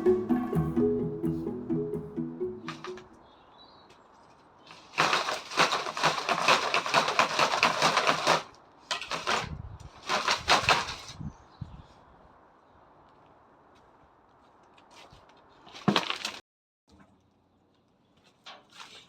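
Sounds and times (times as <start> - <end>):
rough crunching and scraping: 4.6 - 11.2.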